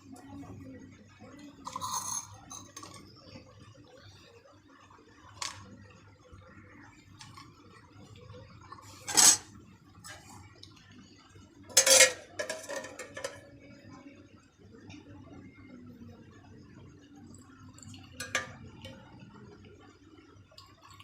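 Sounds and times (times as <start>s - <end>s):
dishes and utensils clattering: 1.6s - 3.2s, 8.7s - 10.4s, 11.7s - 13.6s, 18.2s - 18.9s.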